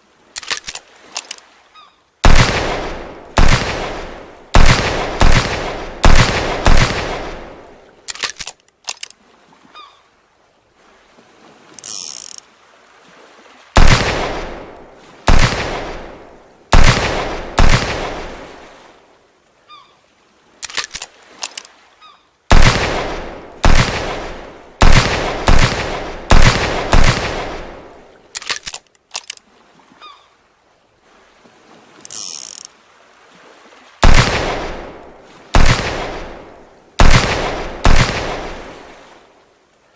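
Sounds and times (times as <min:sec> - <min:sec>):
small clicks: 0:00.4 - 0:01.4, 0:08.1 - 0:09.2, 0:11.8 - 0:12.4, 0:20.6 - 0:21.7, 0:28.3 - 0:29.4, 0:32.0 - 0:32.7
revolver gunshots echoing: 0:02.2 - 0:07.6, 0:13.8 - 0:18.4, 0:22.5 - 0:28.0, 0:34.0 - 0:35.0, 0:35.6 - 0:38.8.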